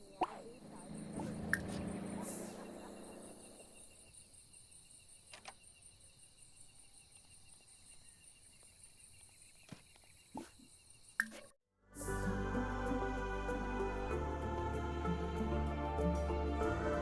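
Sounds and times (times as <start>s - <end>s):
insect trilling: 0.0s - 11.5s.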